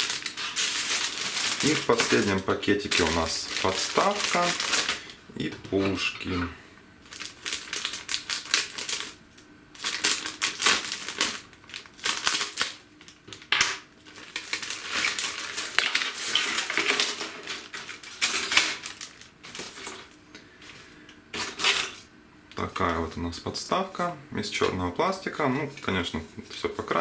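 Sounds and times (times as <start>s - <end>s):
plastic parts clacking: 0.0s - 5.0s, 13.3s - 20.0s
plastic bag crinkling: 0.0s - 23.2s, 24.0s - 27.0s.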